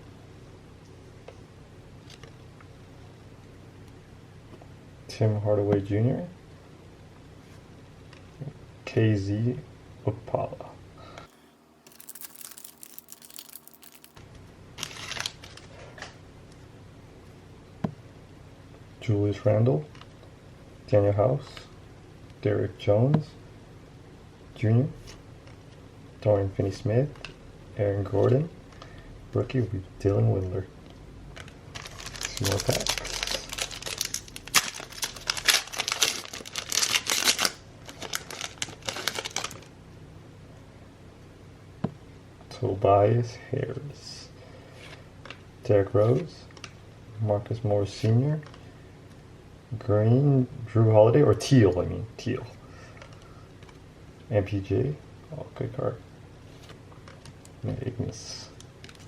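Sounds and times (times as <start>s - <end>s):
foil wrapper crinkling: 11.8s - 14.2s, 14.8s - 15.7s, 31.4s - 39.7s.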